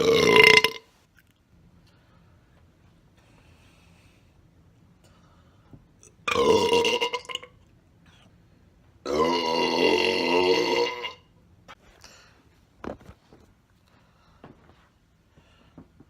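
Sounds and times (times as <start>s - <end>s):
man burping loudly: 0.0s - 0.9s, 6.2s - 7.5s, 9.1s - 11.2s.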